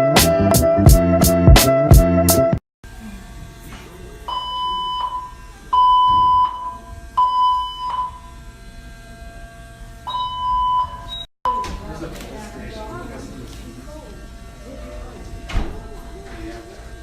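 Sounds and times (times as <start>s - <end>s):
fire alarm beeping: 4.3s - 8.5s, 10.0s - 11.9s.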